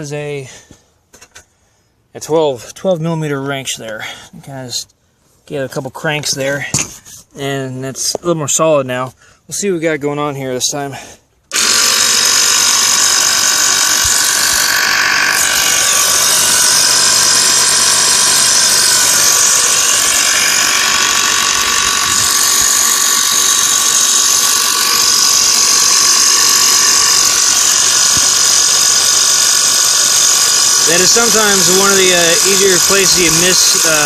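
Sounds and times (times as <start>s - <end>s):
air compressor running with whine: 11.5s - 34.0s.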